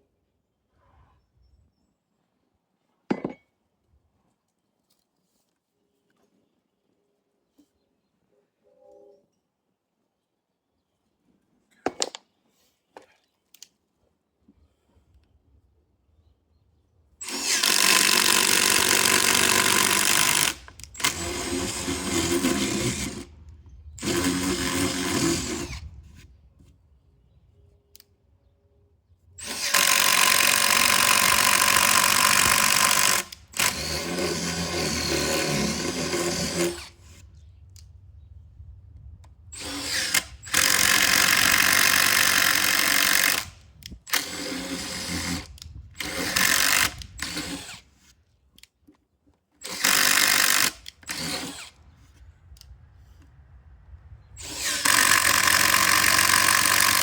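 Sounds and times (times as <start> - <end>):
power drill running: 17.2 - 23.3, 24.0 - 25.8, 29.4 - 37.2, 39.6 - 43.5, 44.1 - 47.8, 49.6 - 51.8, 54.4 - 57.0.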